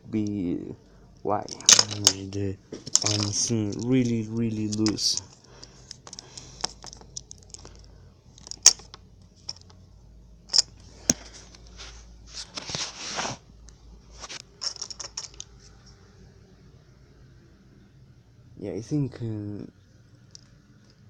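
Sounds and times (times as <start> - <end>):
plastic toy parts clicking: 2.9 - 4.1, 4.7 - 7.8, 8.4 - 9.8
short rustle: 10.5 - 13.5, 14.1 - 15.8.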